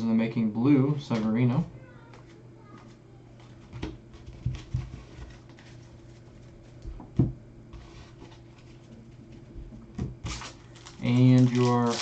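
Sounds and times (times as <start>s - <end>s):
low electrical hum: 0.0s - 12.0s
cards rustling and knocking: 3.7s - 9.4s.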